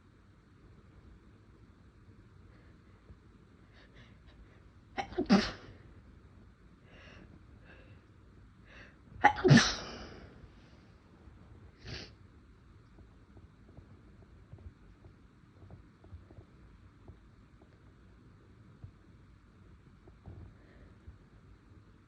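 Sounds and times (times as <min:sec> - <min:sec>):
person sneezing: 0:05.0 - 0:05.7, 0:09.2 - 0:10.2.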